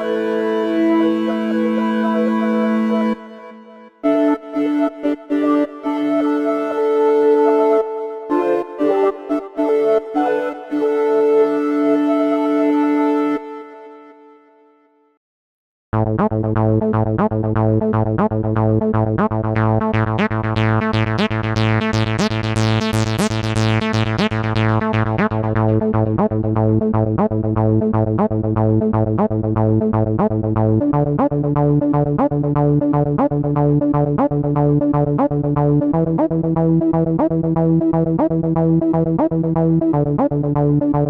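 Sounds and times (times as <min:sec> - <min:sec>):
held synthesizer bass and chord: 0:00.0 - 0:14.8, 0:16.0 - 0:41.0
fast plucked synthesizer notes: 0:16.0 - 0:41.0.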